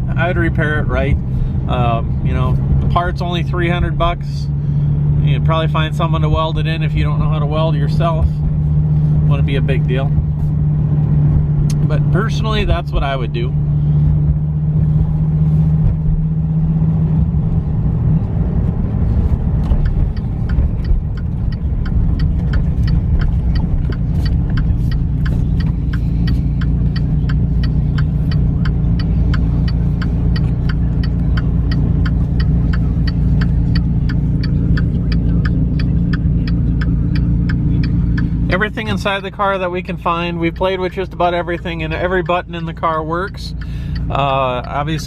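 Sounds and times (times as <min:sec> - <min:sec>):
car engine idling rumble: 0:00.0 - 0:45.0
light ticking: 0:19.0 - 0:45.0.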